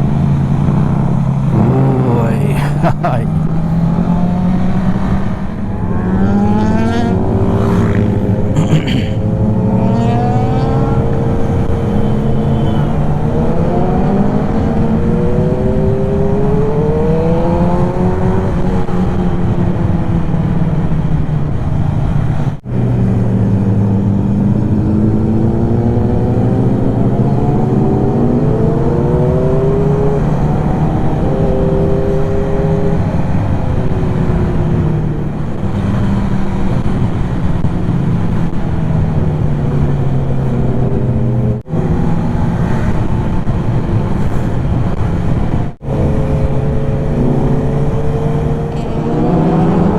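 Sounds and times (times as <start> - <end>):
motorcycle engine accelerating: 0.0 - 49.9
wind noise rushing: 2.9 - 8.6.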